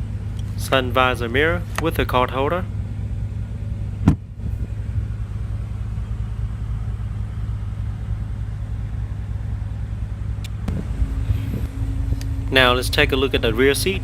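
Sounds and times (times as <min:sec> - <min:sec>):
car engine idling rumble: 0:00.0 - 0:14.0
brief knock: 0:04.0 - 0:04.2.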